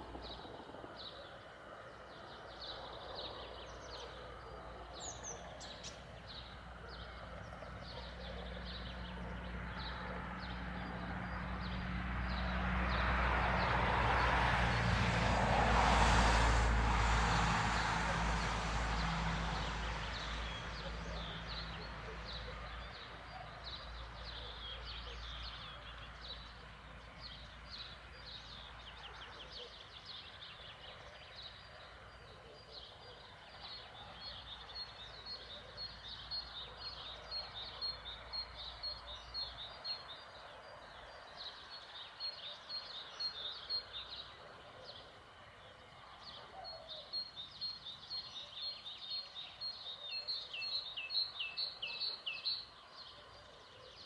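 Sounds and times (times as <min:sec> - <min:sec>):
engine passing by: 0:04.6 - 0:29.4
small birds chirping: 0:20.1 - 0:54.0.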